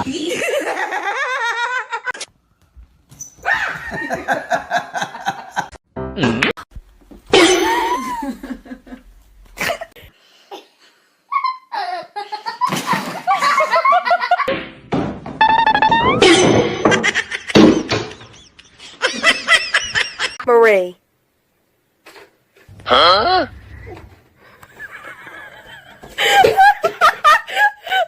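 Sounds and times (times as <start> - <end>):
laughter: 0.0 - 2.2, 3.7 - 5.8, 7.4 - 10.0, 11.3 - 14.5, 16.9 - 20.4, 24.6 - 28.0
music: 6.0 - 6.2.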